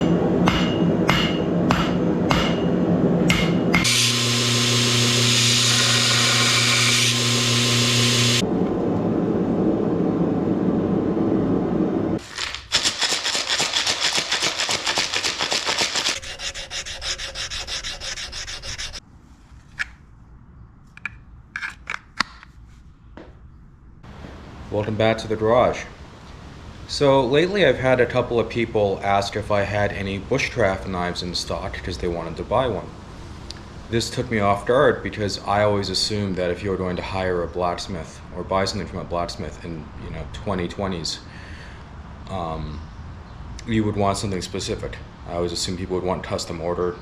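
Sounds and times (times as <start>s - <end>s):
hammer blows: 0.0s - 8.4s
machine hum: 0.0s - 12.2s
sanding of blade: 3.8s - 8.4s, 12.7s - 19.0s.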